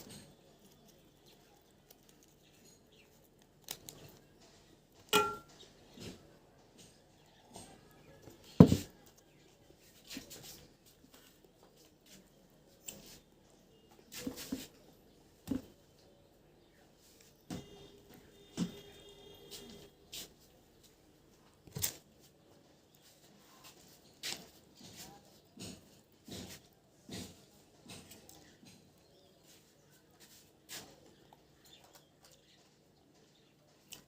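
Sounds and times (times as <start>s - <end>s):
tableware clicking and knocking: 5.1s - 5.7s.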